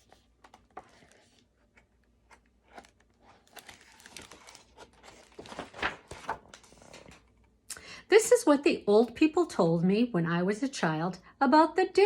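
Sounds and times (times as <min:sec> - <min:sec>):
paper rustling and crinkling: 0:00.0 - 0:07.3.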